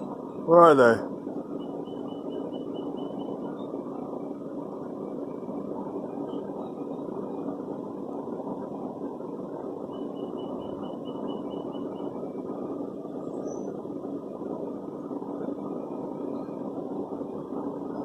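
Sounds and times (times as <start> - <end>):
low mechanical hum: 0.0 - 18.0
faint high peeps: 1.6 - 3.7, 9.9 - 12.2.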